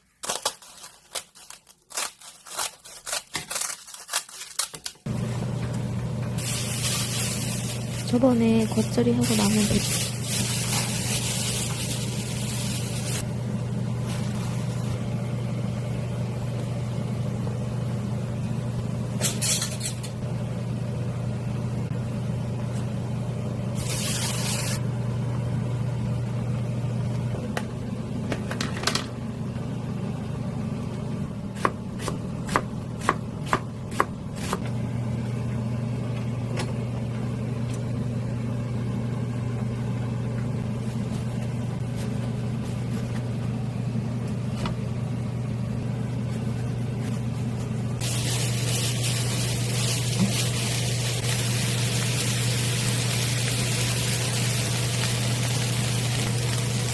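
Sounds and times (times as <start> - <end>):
steady low hum: 5.0 - 56.9
knife chopping on cutting board: 31.6 - 34.6.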